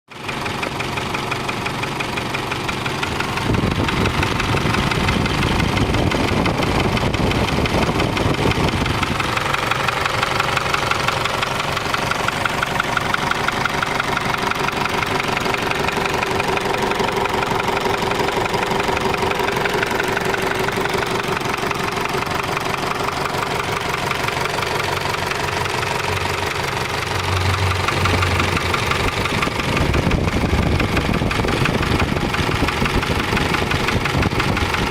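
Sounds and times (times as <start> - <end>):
pickup engine running: 0.1 - 34.9
steady whining tones: 24.4 - 31.3.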